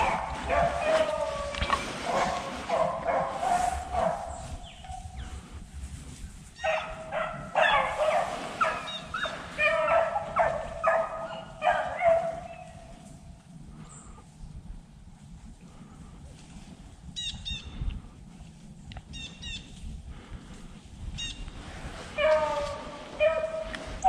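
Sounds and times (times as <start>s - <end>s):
hounds barking and bawling: 0.0s - 5.3s, 6.6s - 12.9s, 22.0s - 24.0s.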